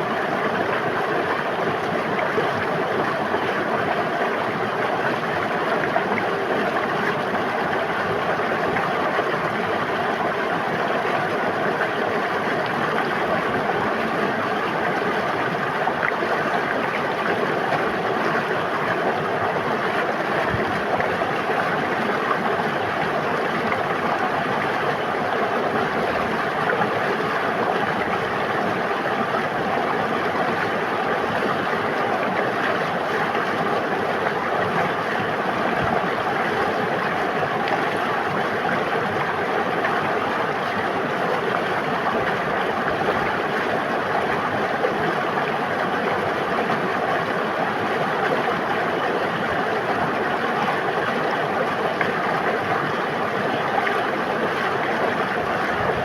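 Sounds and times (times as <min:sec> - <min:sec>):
river water babbling: 0:00.0 - 0:56.0.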